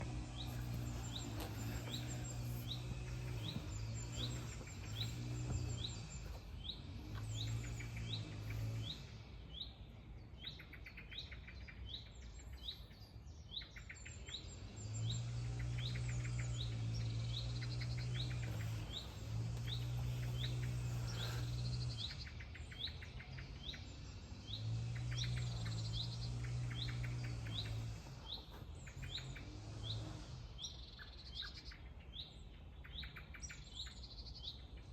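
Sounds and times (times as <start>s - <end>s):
low steady hum: 0.0s - 10.4s
songbirds chirping: 0.0s - 34.9s.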